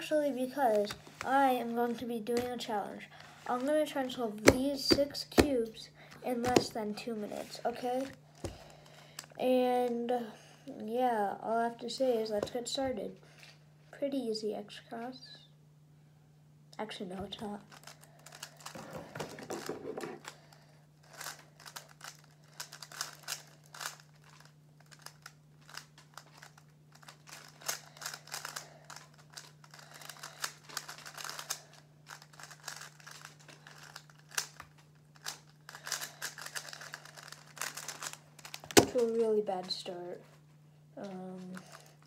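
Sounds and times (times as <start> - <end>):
faint steady hum: 0.0 - 42.0
plastic cube clicking: 21.1 - 39.1.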